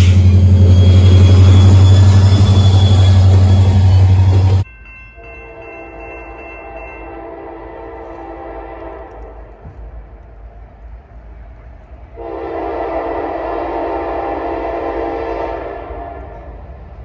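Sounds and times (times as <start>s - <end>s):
loud overloaded sound: 0.0s - 4.6s
multi-chime train horn: 0.5s - 9.5s, 12.2s - 16.6s.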